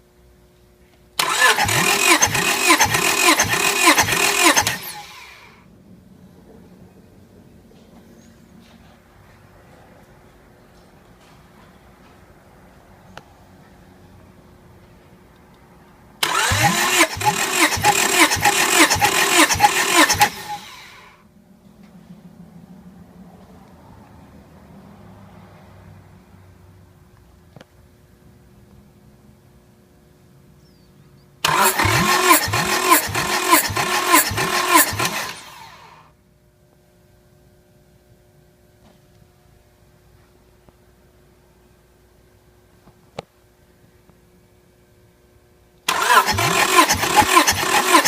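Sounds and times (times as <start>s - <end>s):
starter motor cranking engine: 1.2s - 5.6s, 16.2s - 21.1s, 31.4s - 36.0s, 45.9s - 48.0s
starter whir running down: 1.2s - 5.6s, 16.2s - 21.1s, 31.4s - 36.0s, 45.9s - 48.0s.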